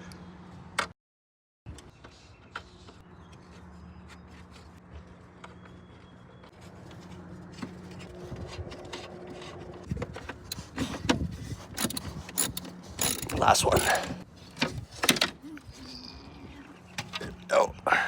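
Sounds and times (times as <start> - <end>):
hand tools scraping: 6.6 - 16.1
ratchet clicks: 11.8 - 14.2.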